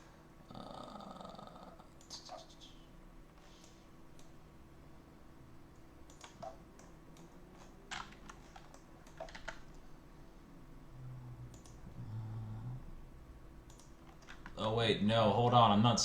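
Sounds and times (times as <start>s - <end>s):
low hum: 0.0s - 16.0s
computer keyboard typing: 6.0s - 9.8s, 13.7s - 14.6s.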